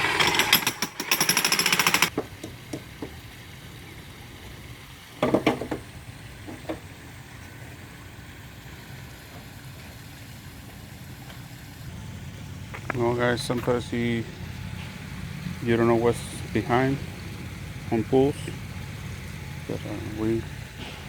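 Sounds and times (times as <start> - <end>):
jackhammer pounding concrete: 0.0 - 2.5
low engine hum: 5.7 - 21.0.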